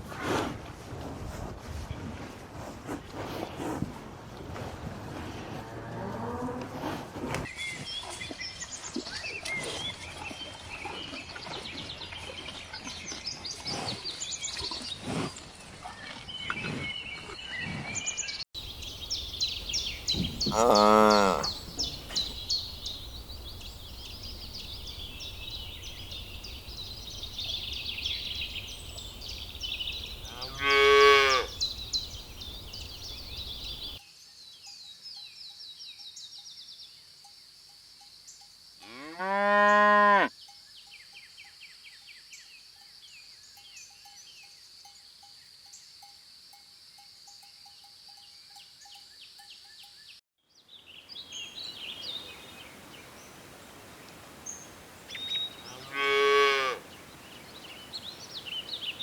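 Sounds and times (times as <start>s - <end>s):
birds chirping: 16.0s - 34.0s, 50.6s - 59.0s
cattle mooing: 20.4s - 21.6s, 55.7s - 56.8s.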